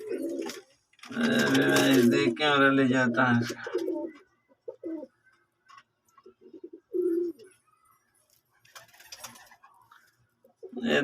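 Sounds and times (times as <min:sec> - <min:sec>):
pigeons cooing: 0:00.0 - 0:05.4, 0:06.2 - 0:07.8, 0:08.7 - 0:11.0.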